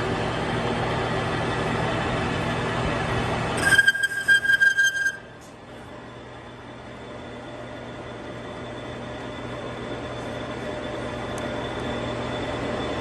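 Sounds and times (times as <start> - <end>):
lathe running: 3.0 - 5.5
high-pitched cutting tool squeal: 3.6 - 5.5.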